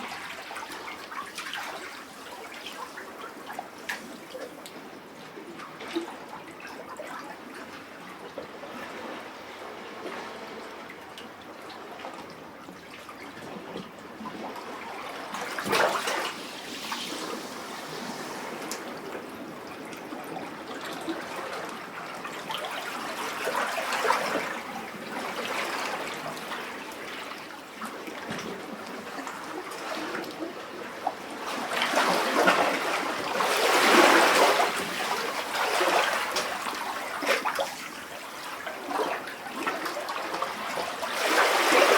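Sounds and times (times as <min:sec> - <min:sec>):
sea waves lapping in rock cavity: 0:14.3 - 0:27.3, 0:27.9 - 0:41.9.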